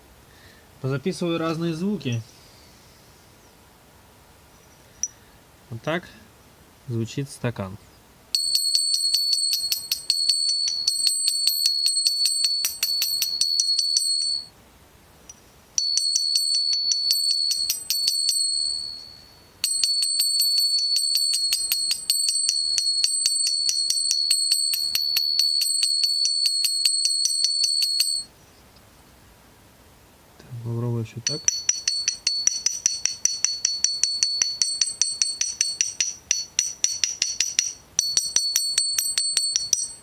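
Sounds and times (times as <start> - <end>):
engine valve tappet knocking: 31.3 - 39.9.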